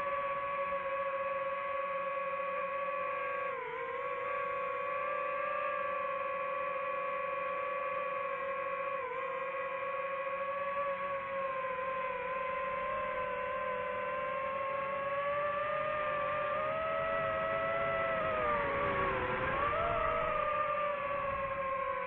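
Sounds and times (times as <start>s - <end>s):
drone propellers whining: 0.0s - 22.0s.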